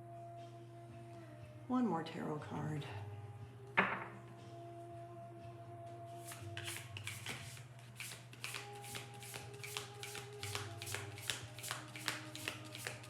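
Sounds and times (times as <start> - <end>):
cards being shuffled: 6.2 - 13.0.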